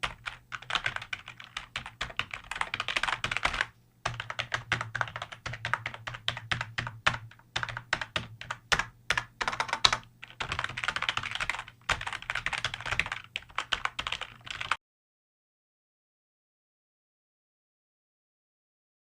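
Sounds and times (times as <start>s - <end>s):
computer keyboard typing: 0.0s - 14.8s.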